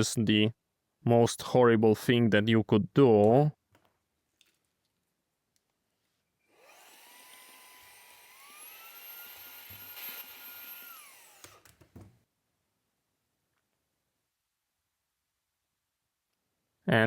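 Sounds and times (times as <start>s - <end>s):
small electric tool motor whining: 6.5s - 11.8s.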